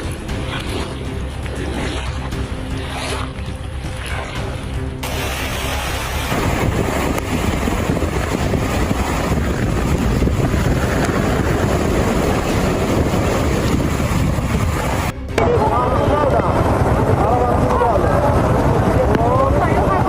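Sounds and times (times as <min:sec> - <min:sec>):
floodwater rushing: 0:00.0 - 0:20.0
wind buffeting microphone: 0:05.0 - 0:20.0.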